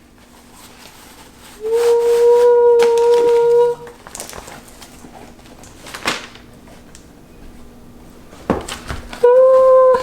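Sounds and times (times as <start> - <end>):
packaging rustle: 2.8 - 7.0.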